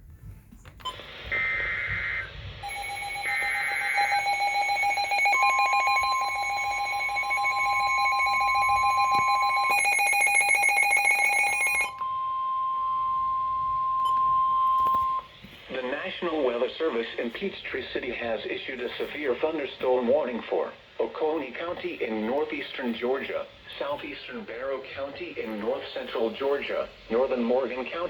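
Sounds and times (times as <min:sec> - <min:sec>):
screechy data bursts: 0:01.2 - 0:11.9.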